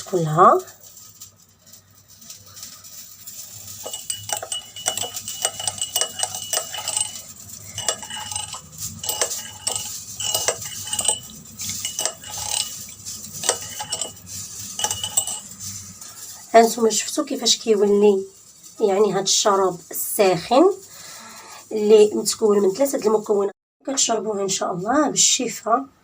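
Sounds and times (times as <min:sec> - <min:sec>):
metal spoon clinking in glass: 0:03.3 - 0:16.2.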